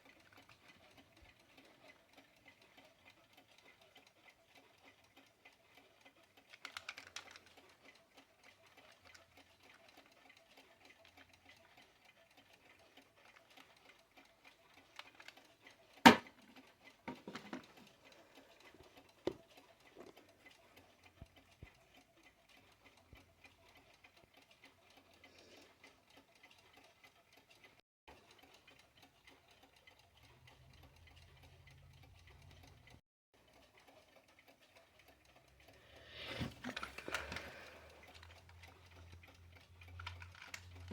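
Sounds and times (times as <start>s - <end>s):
alarm clock ticking: 0.0s - 36.1s, 36.7s - 40.9s
small knocks: 17.1s - 17.8s.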